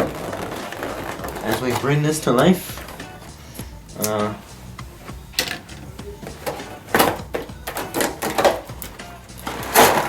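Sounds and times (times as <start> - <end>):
packaging crinkling and ripping: 0.0 - 2.2.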